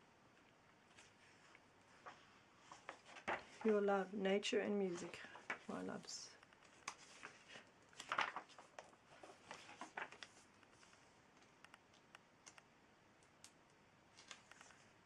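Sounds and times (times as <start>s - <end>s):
paper pages rustling: 0.8s - 4.1s, 4.8s - 12.1s, 14.1s - 15.0s
small clicks: 11.6s - 14.8s.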